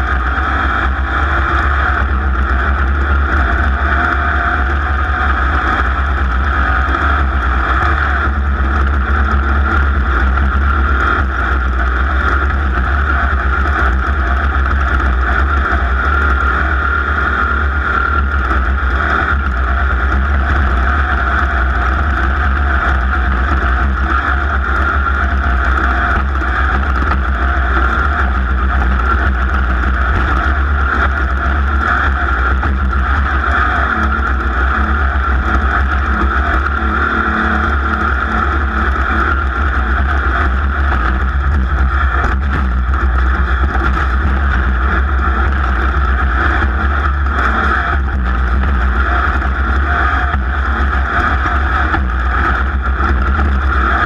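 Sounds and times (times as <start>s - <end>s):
racing engine running: 0.0s - 54.0s.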